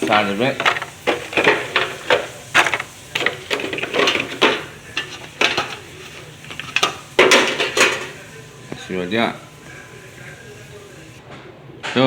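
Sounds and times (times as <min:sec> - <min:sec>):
small pieces clicking and clinking: 0:00.0 - 0:08.9.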